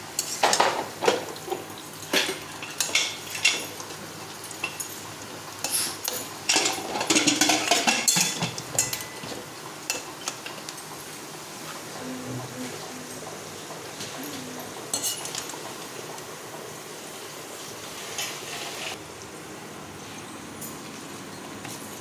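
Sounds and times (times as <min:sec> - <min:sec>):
metal utensil scraping cookware: 0:05.6 - 0:09.1.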